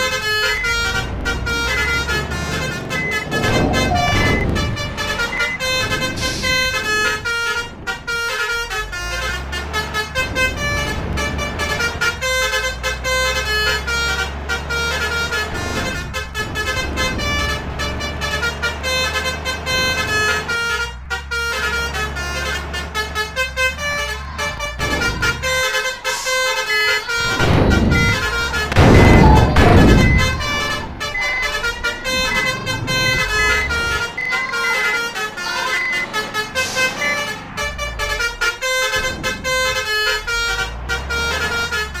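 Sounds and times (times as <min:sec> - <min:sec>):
low engine drone: 0:00.0 - 0:20.3
multi-tone musical horns: 0:00.0 - 0:42.0.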